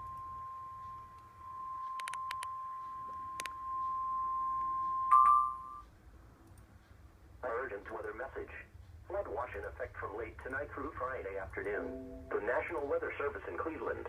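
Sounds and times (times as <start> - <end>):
faint clicks: 1.2 - 2.5, 6.4 - 7.0
warning alarm tone: 11.8 - 12.7.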